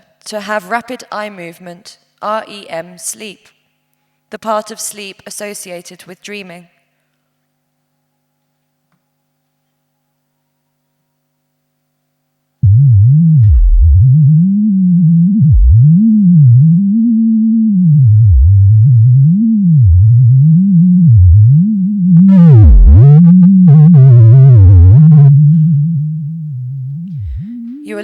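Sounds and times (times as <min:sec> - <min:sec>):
buzzy tone with wobbling overtones: 0:12.6 - 0:28.0
low electronic tone swooping: 0:12.6 - 0:28.0.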